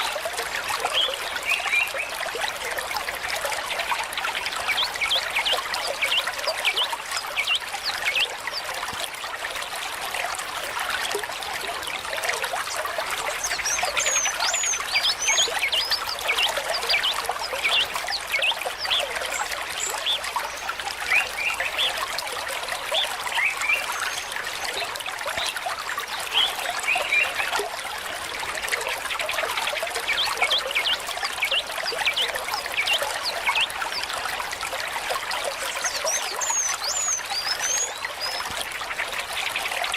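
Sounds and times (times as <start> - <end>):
water trickling and bubbling: 0.0 - 39.9
small birds chirping: 12.6 - 22.1, 35.5 - 39.0.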